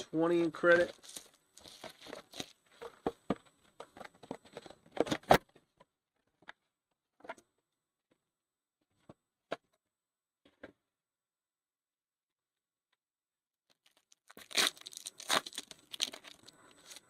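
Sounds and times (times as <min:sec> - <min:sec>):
foil packs crinkling: 0:00.8 - 0:02.6, 0:13.8 - 0:17.0.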